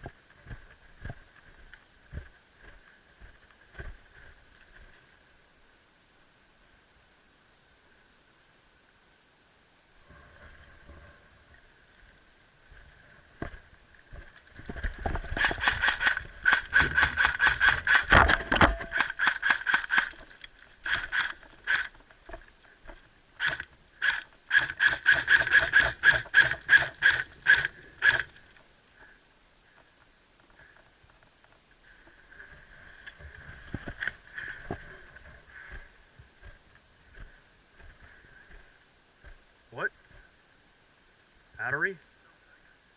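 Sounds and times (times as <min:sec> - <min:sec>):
airsoft gun rapid shots: 0:15.4 - 0:18.2, 0:18.9 - 0:20.2, 0:23.4 - 0:28.3.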